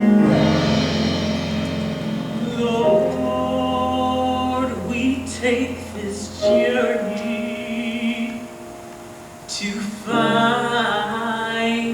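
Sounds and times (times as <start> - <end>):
low bass note: 0.0 - 6.5
sustained chords: 0.0 - 9.5
held sung notes: 0.0 - 11.9.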